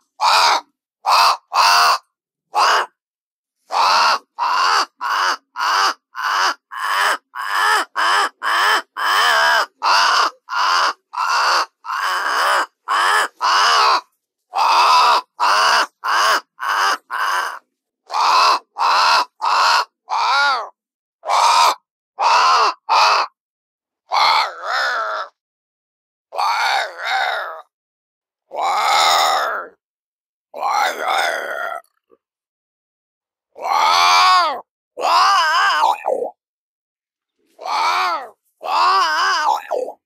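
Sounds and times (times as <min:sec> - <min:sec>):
crow cawing: 0:00.2 - 0:02.9, 0:03.7 - 0:14.0, 0:14.6 - 0:20.7, 0:21.3 - 0:23.4, 0:24.1 - 0:25.3, 0:26.4 - 0:27.6, 0:33.6 - 0:36.2, 0:37.6 - 0:40.0.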